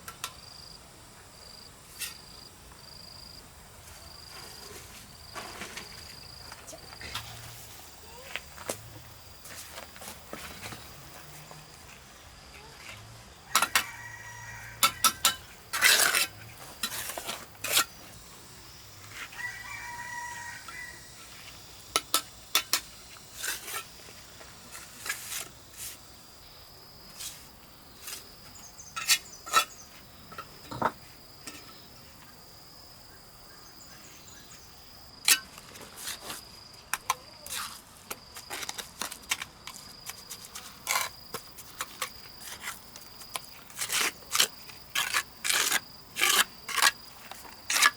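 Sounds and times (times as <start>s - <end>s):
rooster crowing: 13.5s - 15.4s, 19.2s - 21.2s.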